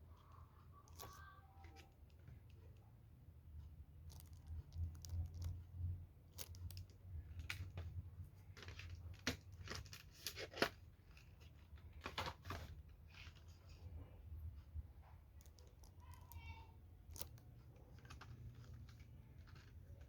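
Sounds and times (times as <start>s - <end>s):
low steady hum: 0.0s - 20.0s
packaging rustling and crinkling: 7.4s - 13.5s.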